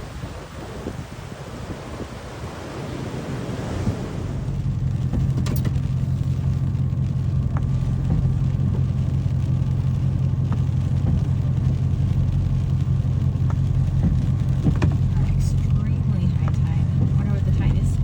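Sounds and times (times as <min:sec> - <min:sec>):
engine idling: 0:04.0 - 0:18.0.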